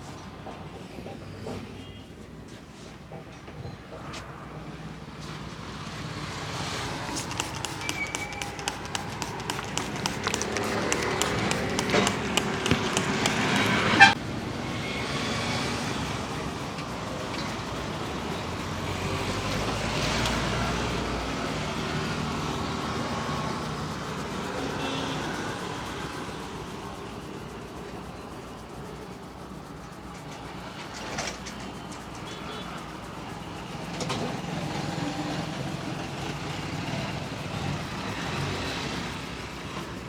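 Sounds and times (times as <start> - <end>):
road traffic: 4.2 - 40.0
hand taps and slaps on head: 7.1 - 14.0.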